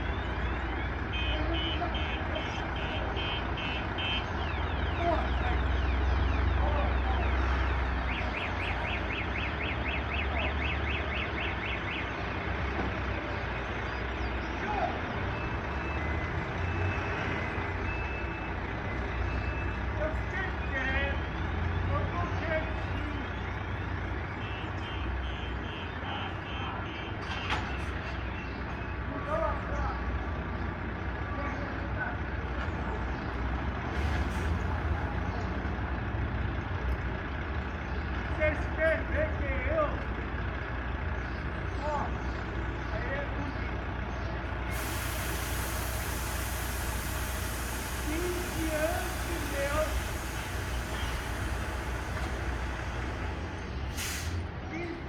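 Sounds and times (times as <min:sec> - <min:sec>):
truck reversing siren chirps: 0:00.0 - 0:31.3, 0:32.2 - 0:54.6
truck engine idling: 0:00.0 - 0:55.0
short hiss: 0:44.7 - 0:54.4.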